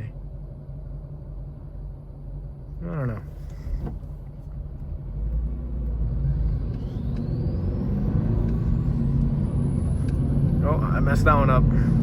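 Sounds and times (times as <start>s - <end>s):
car engine accelerating: 2.8s - 12.0s
faint rising whine: 4.6s - 11.1s.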